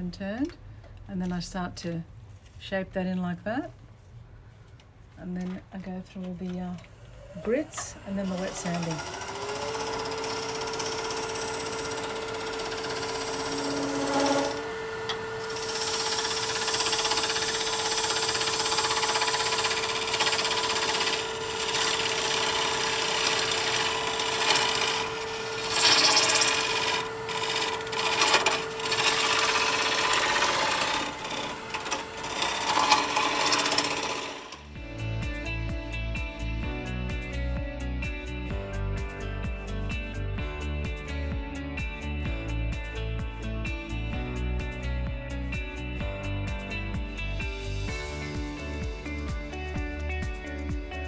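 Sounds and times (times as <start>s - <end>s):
wood lathe motor whine: 7.1s - 34.7s.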